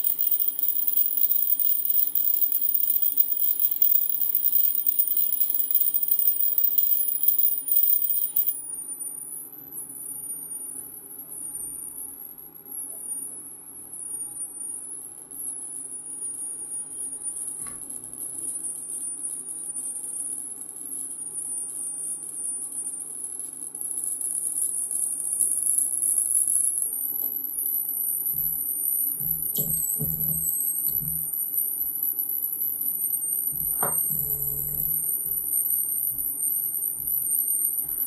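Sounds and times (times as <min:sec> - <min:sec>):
high wavering electronic whistle: 0:00.0 - 0:08.6.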